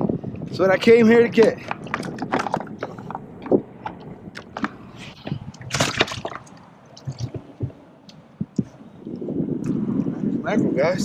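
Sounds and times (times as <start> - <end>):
water sloshing around a kayak: 1.7 - 7.9
dull thumps: 7.0 - 7.8.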